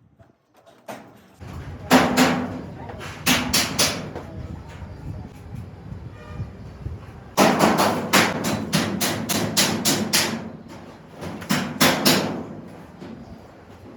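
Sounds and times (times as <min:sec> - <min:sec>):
rapid hammer blows: 0:07.4 - 0:12.7.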